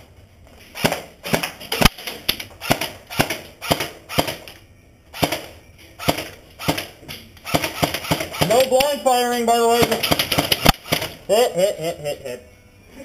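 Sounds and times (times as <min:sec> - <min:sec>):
airsoft gun shots: 0:00.8 - 0:04.5, 0:05.2 - 0:09.0, 0:09.8 - 0:11.2.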